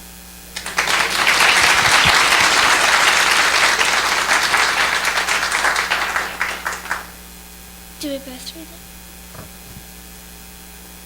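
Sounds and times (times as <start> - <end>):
congregation applauding: 0.6 - 7.2.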